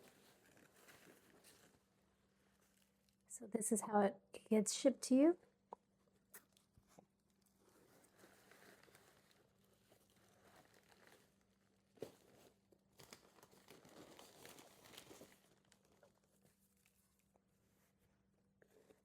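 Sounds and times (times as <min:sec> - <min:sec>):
packaging crinkling and rustling: 0:00.0 - 0:03.2, 0:07.3 - 0:17.0.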